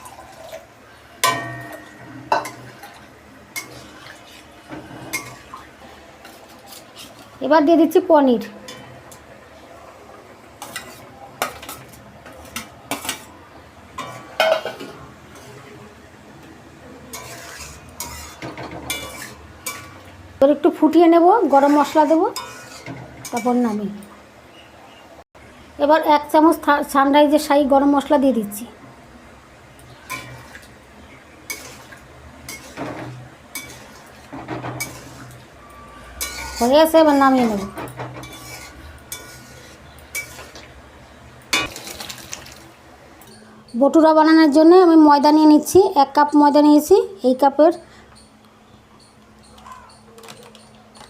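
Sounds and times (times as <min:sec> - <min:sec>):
spoon knocking and scraping a pan: 0:01.2 - 0:07.2, 0:10.6 - 0:15.6, 0:17.1 - 0:20.1, 0:21.4 - 0:23.8, 0:31.4 - 0:40.8
metal spoon clinking against pot: 0:36.2 - 0:40.7.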